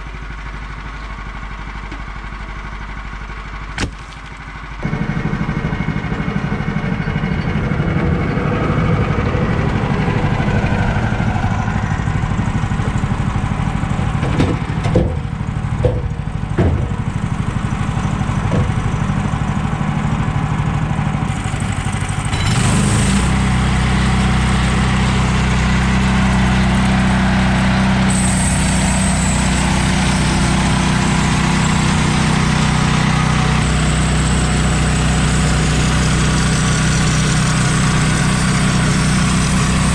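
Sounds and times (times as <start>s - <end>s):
sawmill gas engine running: 0.0s - 39.9s
sharp knocks: 3.8s - 4.4s, 14.2s - 17.1s.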